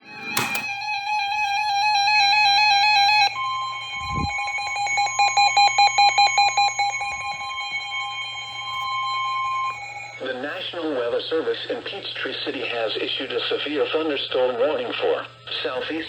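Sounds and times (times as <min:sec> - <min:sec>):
long steady warning tone: 0:00.0 - 0:16.0
warbling electronic alarm beeps: 0:00.1 - 0:11.4
rapid pulsing beeps: 0:03.2 - 0:11.3.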